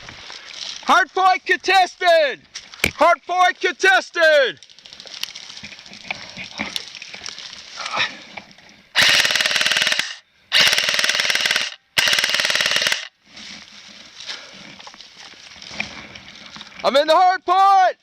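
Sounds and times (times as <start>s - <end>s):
airsoft gun automatic bursts: 9.0s - 13.1s.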